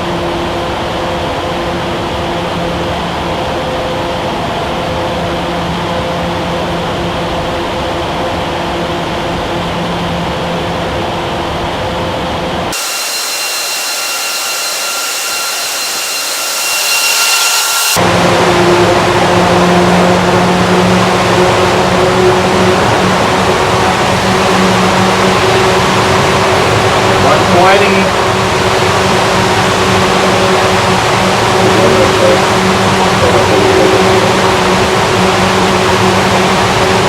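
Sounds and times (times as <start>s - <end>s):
fans rushing wind with hum: 0.0s - 13.5s, 14.7s - 37.0s
hissy rush with high whine: 12.7s - 20.4s.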